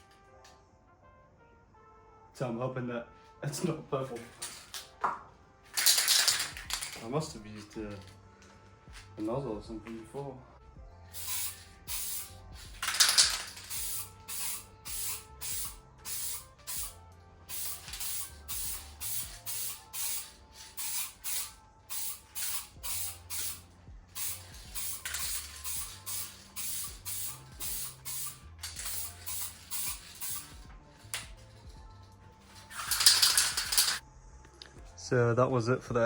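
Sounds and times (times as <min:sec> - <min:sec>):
aerosol can spraying: 0:05.7 - 0:07.7, 0:11.0 - 0:31.7, 0:32.4 - 0:34.0.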